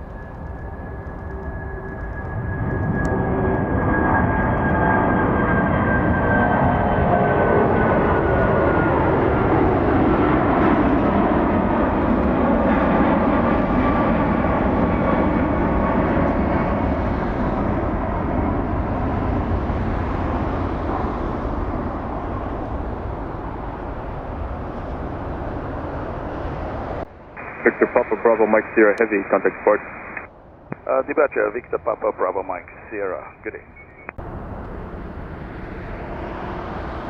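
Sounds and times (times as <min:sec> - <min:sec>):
jet engine roar: 0:00.0 - 0:37.0
jet engine whine: 0:00.0 - 0:37.0.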